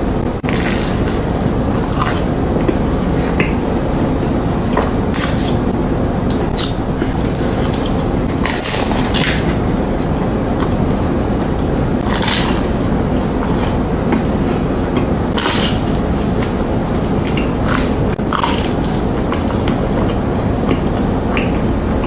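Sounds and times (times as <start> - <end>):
loud low noise: 0.0 - 22.0
crunchy bite: 0.3 - 2.4, 6.4 - 10.8, 12.0 - 14.3, 15.3 - 20.2.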